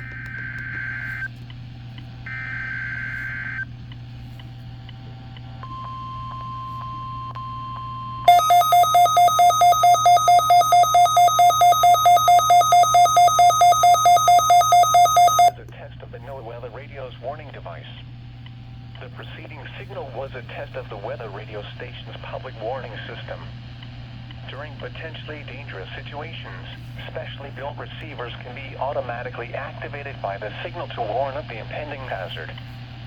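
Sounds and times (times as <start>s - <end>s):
steady warning tone: 5.6s - 15.6s
loud rapid alarm beeping: 8.3s - 15.6s.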